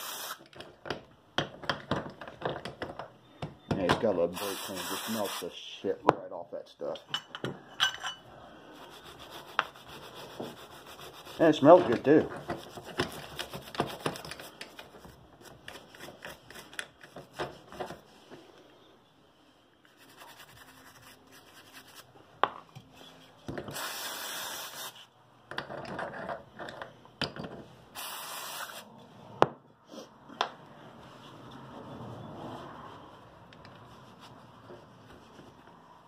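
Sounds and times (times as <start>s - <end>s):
aerosol spray hissing: 0.0s - 0.4s, 4.4s - 5.4s, 23.7s - 25.0s, 28.0s - 28.8s.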